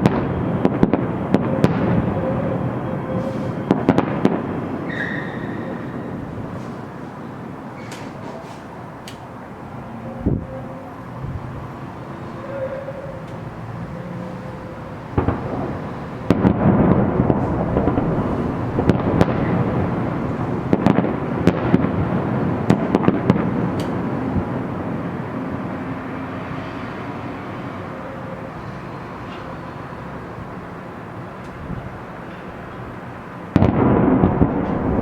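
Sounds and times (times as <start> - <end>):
rumbling echo: 0.0 - 7.8, 13.8 - 26.1, 33.5 - 35.0
fireworks bangs and crackling: 0.0 - 9.4, 14.5 - 26.9, 27.8 - 35.0.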